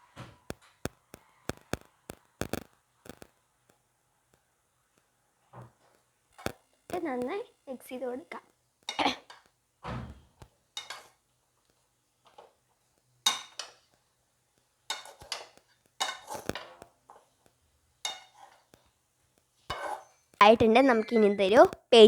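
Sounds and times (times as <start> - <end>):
spatula scraping in iron wok: 10.8 - 11.2, 14.9 - 17.4, 18.0 - 18.8, 19.7 - 21.4.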